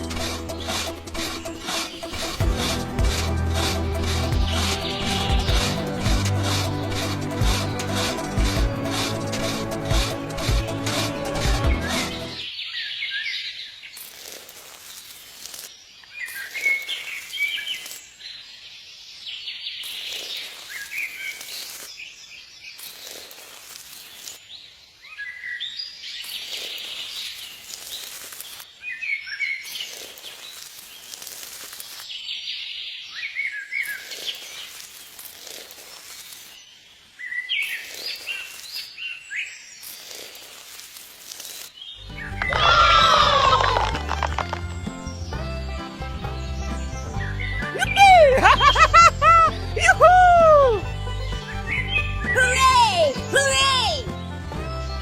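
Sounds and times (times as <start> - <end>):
birds chirping: 0.0 - 13.9, 41.7 - 55.0
outdoor hiss: 33.7 - 42.0.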